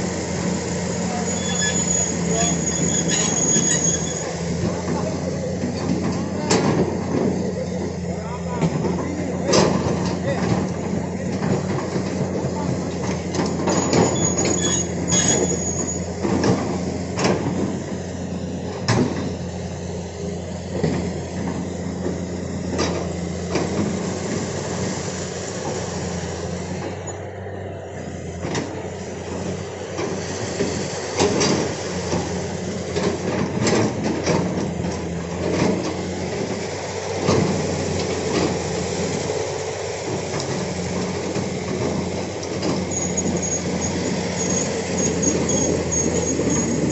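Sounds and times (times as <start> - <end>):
excavator diesel engine droning: 0.0 - 46.9.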